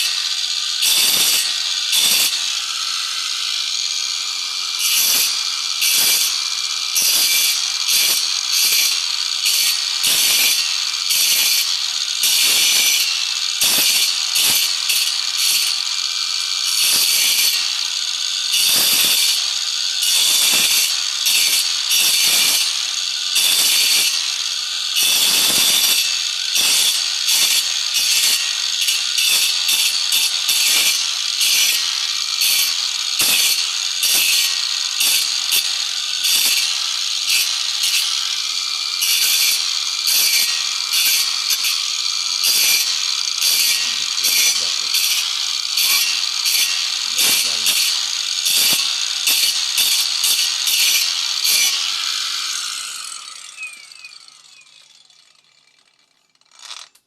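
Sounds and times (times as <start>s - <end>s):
hand tool scraping wood: 0.0s - 0.2s, 39.0s - 51.8s.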